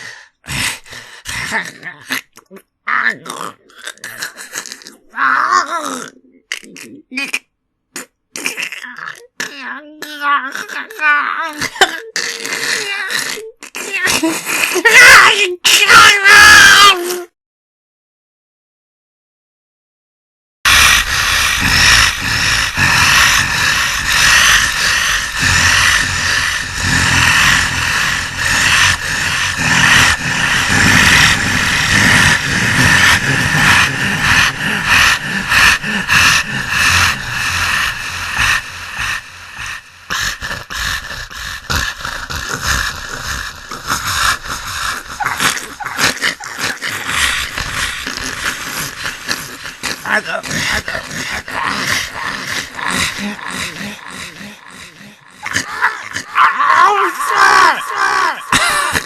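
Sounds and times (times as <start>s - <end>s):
beast panting and growling: 0.0s - 7.1s, 20.7s - 59.0s
choking gasps: 0.0s - 14.8s, 20.7s - 59.0s.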